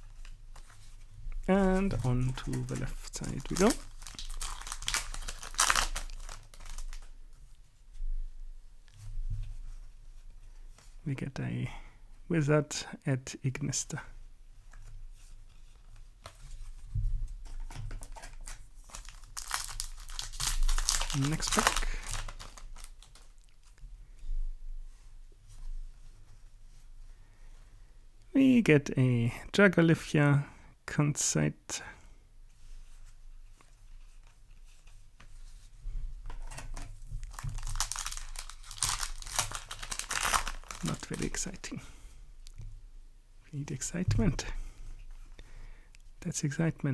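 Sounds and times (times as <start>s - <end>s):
trading cards clicking and rustling: 1.5s - 7.1s, 18.0s - 23.3s, 37.2s - 41.7s
foil pack crinkling: 1.5s - 7.2s, 18.0s - 23.5s, 37.1s - 41.8s.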